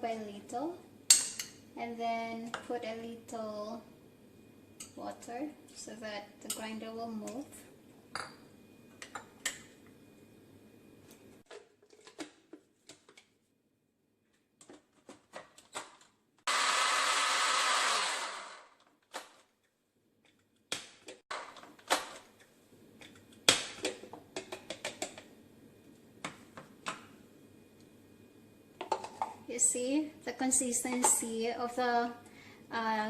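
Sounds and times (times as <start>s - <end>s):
electric grinder whirring: 16.5s - 18.8s.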